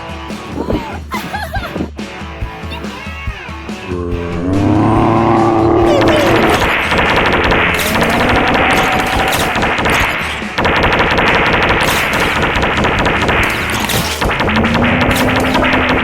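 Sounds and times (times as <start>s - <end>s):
rapid clatter of sharp impacts: 4.5s - 16.0s.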